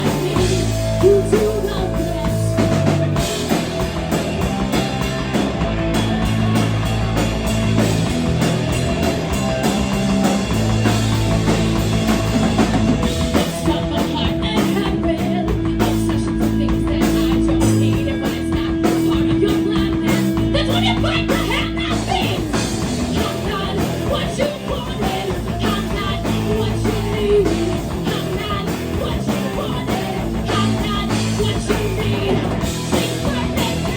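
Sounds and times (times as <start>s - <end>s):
woman singing: 0.0s - 3.2s, 13.3s - 33.9s
rock band playing: 0.0s - 33.9s.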